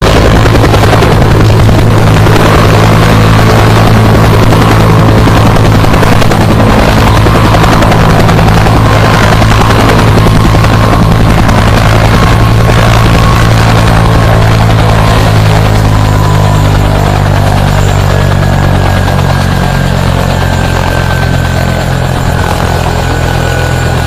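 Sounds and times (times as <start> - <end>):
helicopter engine and rotor drone: 0.0 - 24.0.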